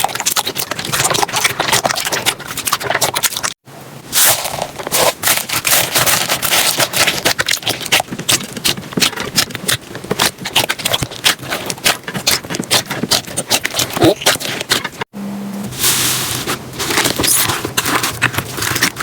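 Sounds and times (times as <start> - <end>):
slime squished by hands: 4.2 - 15.0.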